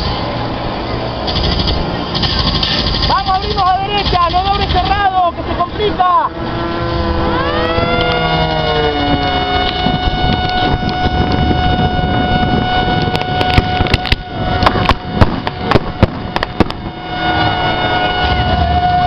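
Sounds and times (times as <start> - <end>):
model airplane engines: 0.0 - 19.0
sharp cracks: 1.3 - 5.2, 13.1 - 16.8.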